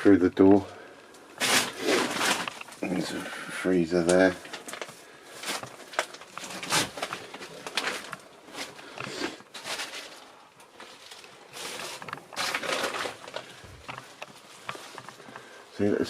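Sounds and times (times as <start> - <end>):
rustling of clutter being handled: 0.0 - 16.0
scraping rustle: 1.4 - 3.3, 4.4 - 15.9
creaks: 5.5 - 15.9.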